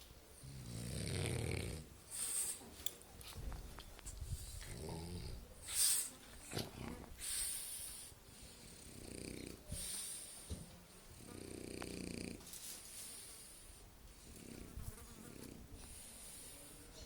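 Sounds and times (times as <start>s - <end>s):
dog snoring: 0.4s - 1.9s, 8.4s - 9.9s, 11.2s - 12.4s.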